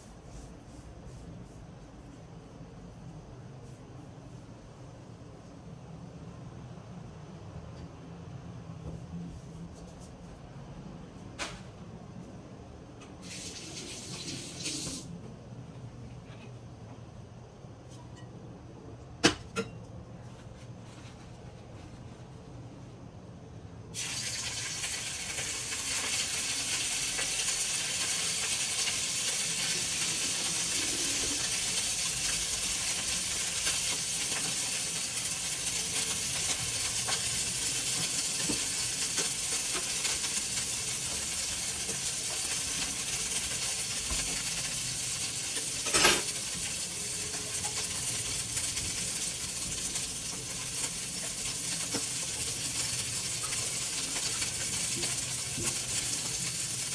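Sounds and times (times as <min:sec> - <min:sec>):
food sizzling in a frying pan: 0:13.2 - 0:15.1, 0:23.9 - 0:56.9.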